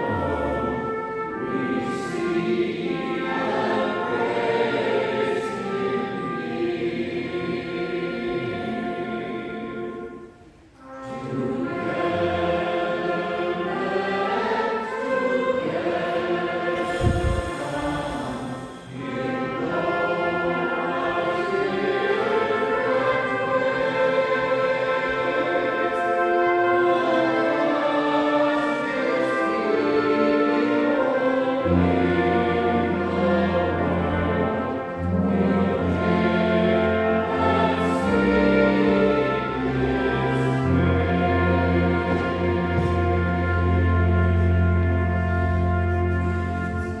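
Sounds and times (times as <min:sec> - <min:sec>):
choir singing: 0:00.0 - 0:47.0.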